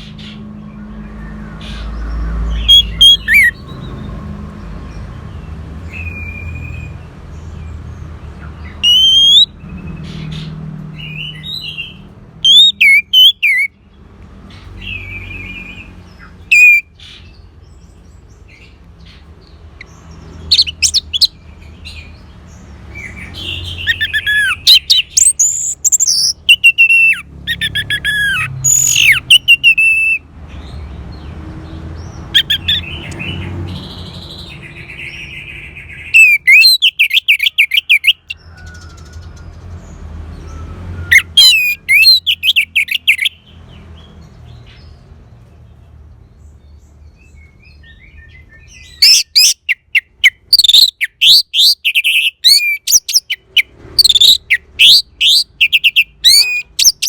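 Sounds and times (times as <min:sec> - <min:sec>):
thrush singing whistled notes: 0:01.7 - 0:04.1, 0:05.8 - 0:07.0, 0:08.6 - 0:10.0, 0:11.0 - 0:13.8, 0:14.8 - 0:17.0, 0:19.8 - 0:22.2, 0:23.0 - 0:30.2, 0:32.3 - 0:38.4, 0:40.4 - 0:43.4, 0:47.8 - 0:57.0.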